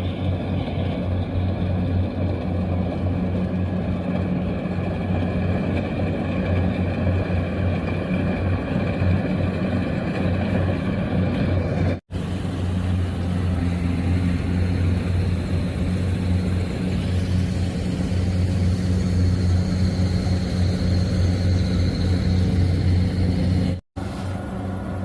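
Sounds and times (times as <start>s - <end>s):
combine harvester engine drone: 0.0s - 25.0s
faint high whine: 12.2s - 25.0s.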